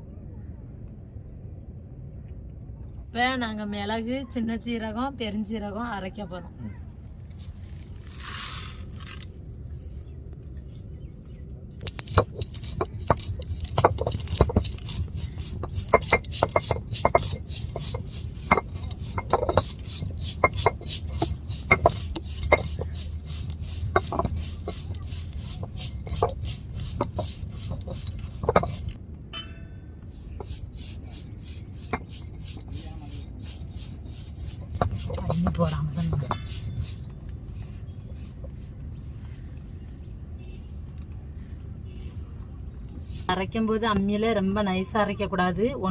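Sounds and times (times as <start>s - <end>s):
spices crushed on grinding stone: 11.8s - 29.0s, 30.1s - 37.0s.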